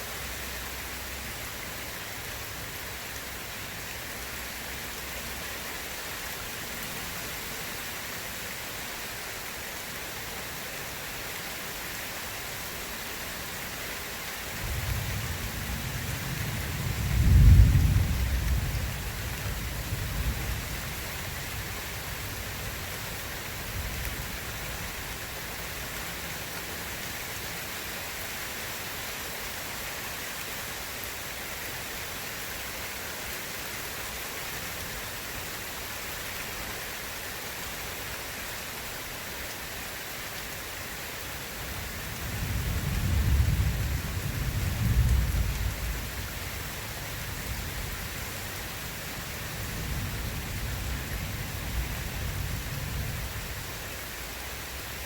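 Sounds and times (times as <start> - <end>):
steady rain: 0.0 - 55.0
thunder rumbling: 14.6 - 21.0, 42.0 - 46.3.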